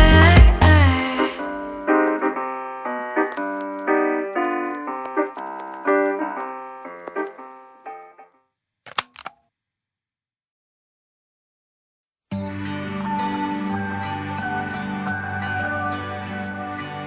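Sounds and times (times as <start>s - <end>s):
solo piano notes and chords: 0.0s - 8.4s, 12.3s - 17.0s.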